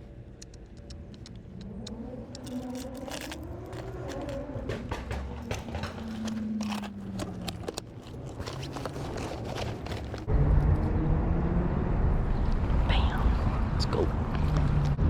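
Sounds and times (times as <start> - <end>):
knocks on rocks: 2.4 - 10.3.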